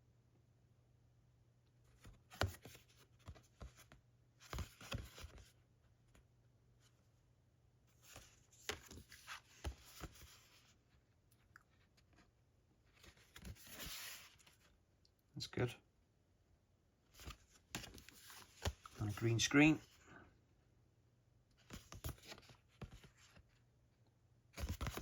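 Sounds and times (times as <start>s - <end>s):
cards sliding and rustling: 2.0s - 5.5s, 7.9s - 10.8s, 13.0s - 14.7s, 17.2s - 19.2s, 21.6s - 23.4s, 24.6s - 25.0s.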